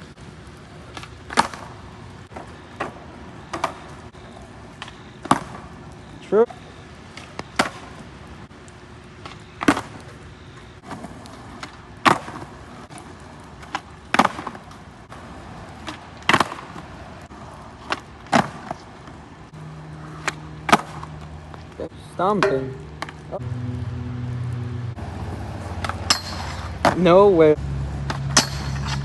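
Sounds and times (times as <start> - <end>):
skateboard rolling on wet concrete: 0.0 - 22.4, 23.0 - 27.3
skateboard clacking: 0.6 - 5.7, 6.5 - 8.1, 9.2 - 10.2, 10.8 - 19.3, 20.0 - 23.4, 25.7 - 27.1.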